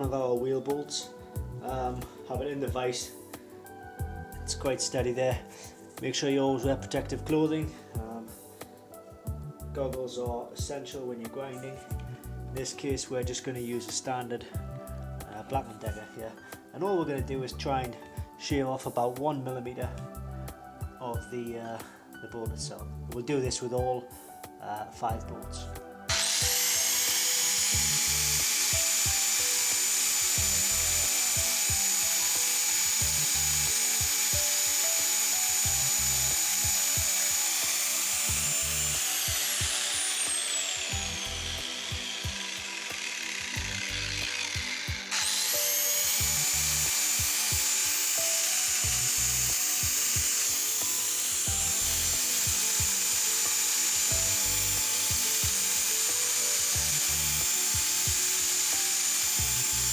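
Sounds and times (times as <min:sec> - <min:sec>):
grinder grinding metal: 0:26.1 - 0:59.9.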